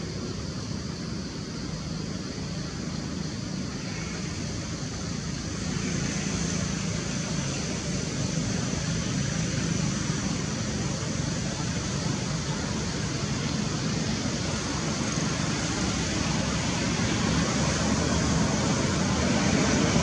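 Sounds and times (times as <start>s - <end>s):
road traffic rumble: 0.0s - 20.0s.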